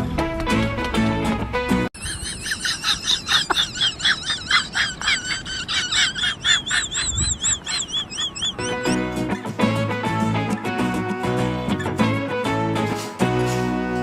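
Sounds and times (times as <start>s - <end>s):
music: 0.0s - 1.9s, 8.6s - 14.0s
animal high-pitched calls: 2.0s - 9.0s.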